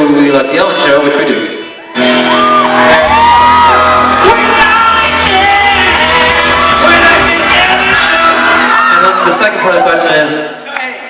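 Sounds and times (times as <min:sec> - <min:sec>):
people shouting: 0:02.2 - 0:10.0
sustained instrumental chord: 0:03.0 - 0:08.8.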